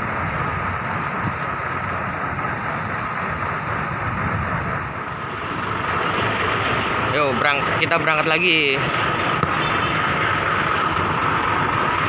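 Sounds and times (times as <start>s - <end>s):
bus engine rumble: 0.0s - 12.0s
faint high whine: 2.0s - 5.2s.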